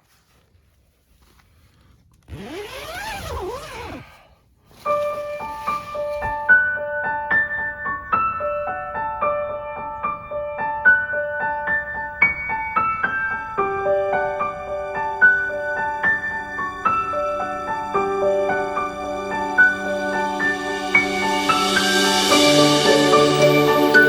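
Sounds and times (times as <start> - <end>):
solo piano music: 5.0 - 24.0.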